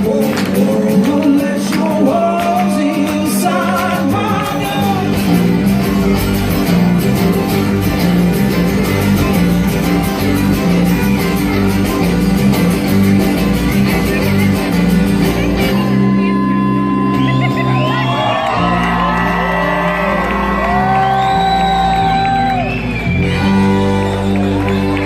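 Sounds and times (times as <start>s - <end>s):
person singing: 0.0s - 5.4s
folk-rock band playing: 0.0s - 25.0s.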